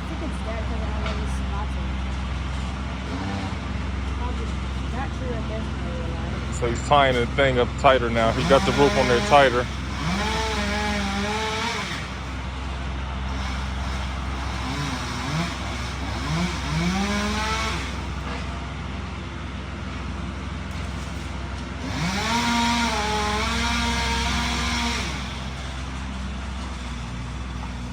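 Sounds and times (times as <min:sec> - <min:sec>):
chainsaw revving: 0:02.6 - 0:04.3, 0:06.3 - 0:18.7, 0:20.7 - 0:27.9.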